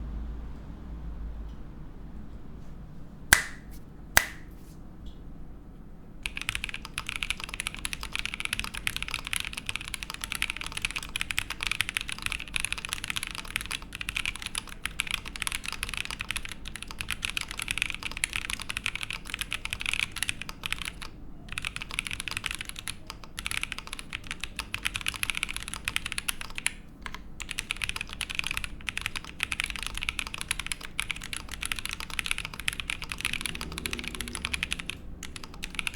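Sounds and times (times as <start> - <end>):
sharp clicks: 3.4 - 4.5
mechanical keyboard typing: 6.2 - 35.9.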